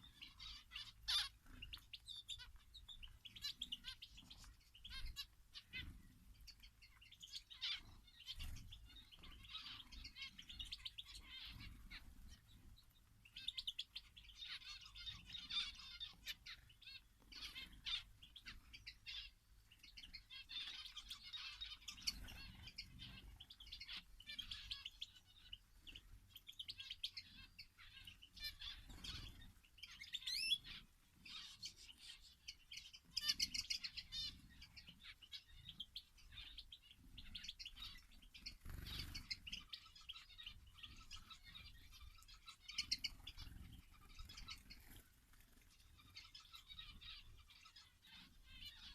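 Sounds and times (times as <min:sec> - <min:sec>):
songbirds chirping and twittering: 0:00.0 - 0:48.9.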